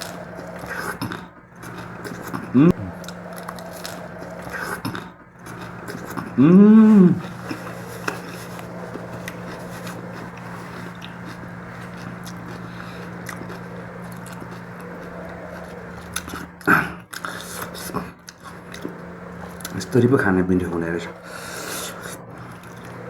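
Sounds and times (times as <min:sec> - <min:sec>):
person chewing food: 0:00.0 - 0:20.0, 0:21.1 - 0:23.0
steady low hum: 0:00.0 - 0:23.0
person humming: 0:02.4 - 0:03.1, 0:06.0 - 0:08.1.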